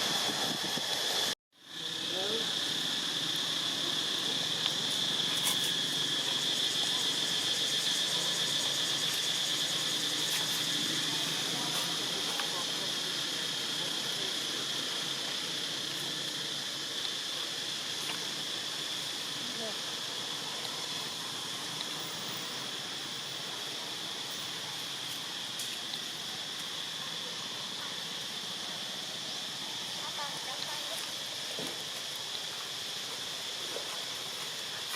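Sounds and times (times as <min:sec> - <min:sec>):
even outdoor hiss: 0:00.0 - 0:34.9
insects droning: 0:00.0 - 0:34.9.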